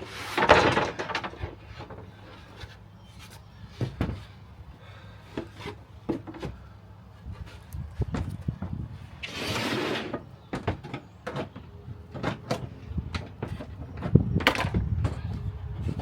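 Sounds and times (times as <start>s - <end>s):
knocks and clunks in a van: 3.8s - 4.3s, 10.4s - 15.4s.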